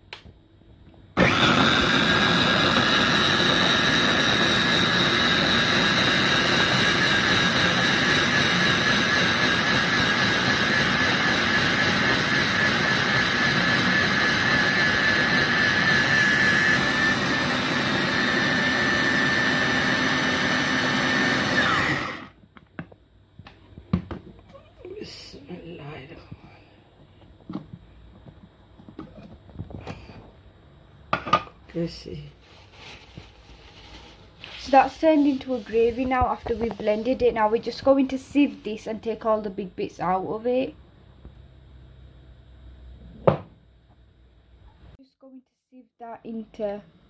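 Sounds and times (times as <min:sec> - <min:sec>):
blender motor whine: 0:01.2 - 0:22.4.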